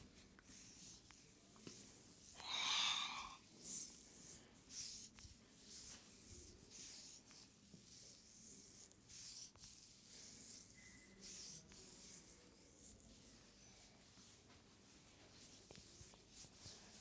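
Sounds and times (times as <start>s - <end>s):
oiled hands rubbing skin: 0.0s - 17.0s.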